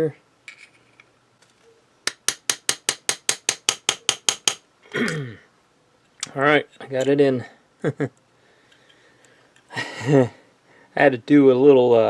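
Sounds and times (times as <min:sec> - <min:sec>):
person grunting: 0:04.9 - 0:05.5.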